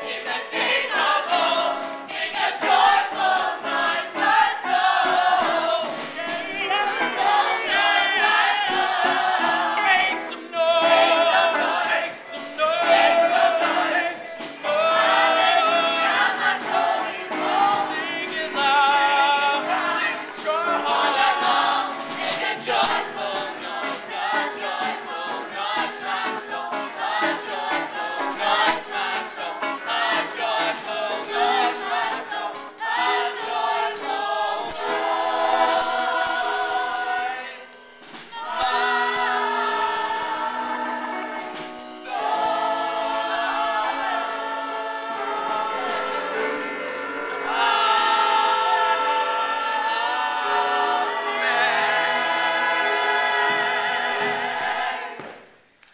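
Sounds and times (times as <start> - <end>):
quick steady beat: 0.0 - 37.3
ensemble singing gospel chorus: 0.0 - 55.8.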